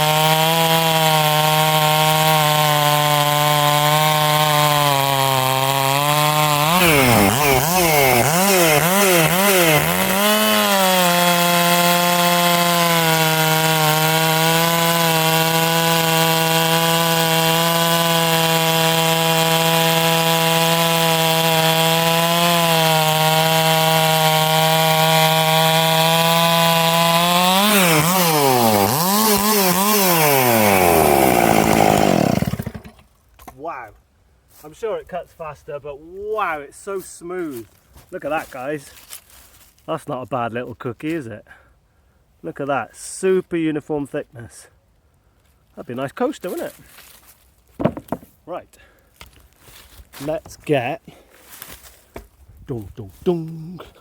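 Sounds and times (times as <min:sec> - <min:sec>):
chainsaw cutting log: 0:00.0 - 0:33.9, 0:46.1 - 0:52.3.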